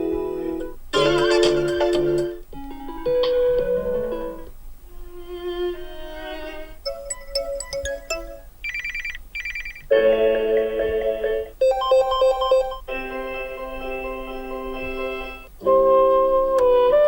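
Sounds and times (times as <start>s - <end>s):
electronic beeps: 6.8s - 9.9s, 11.6s - 12.8s
short melodic alarm tones: 6.8s - 12.9s.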